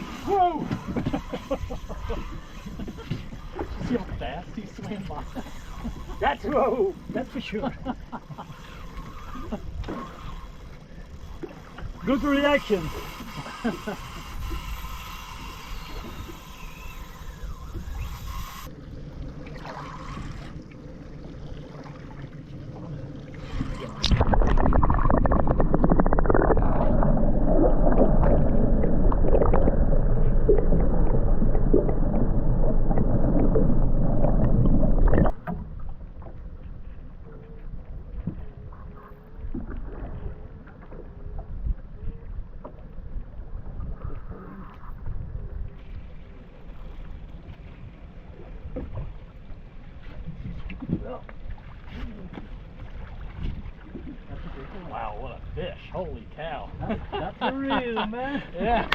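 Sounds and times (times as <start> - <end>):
wind: 0.0 - 58.9
water rushing: 19.3 - 35.6.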